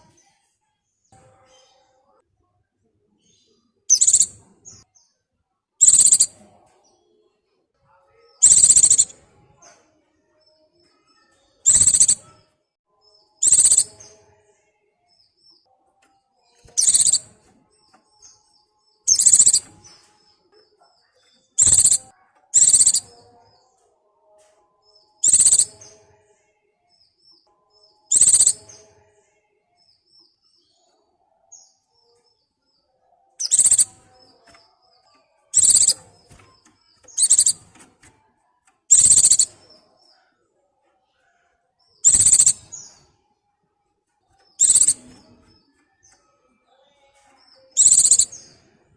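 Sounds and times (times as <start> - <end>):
faint bird chirps: 3.1 - 40.5, 41.1 - 48.9
bird high-pitched calls: 3.9 - 4.4, 5.8 - 6.4, 8.4 - 9.2, 11.6 - 12.4, 13.4 - 14.0, 16.7 - 17.3, 19.1 - 19.7, 21.6 - 23.2, 25.2 - 25.8, 28.1 - 28.7, 33.4 - 34.0, 35.5 - 36.4, 37.1 - 37.9, 38.9 - 39.6, 42.0 - 43.0, 44.6 - 45.2, 47.7 - 48.4.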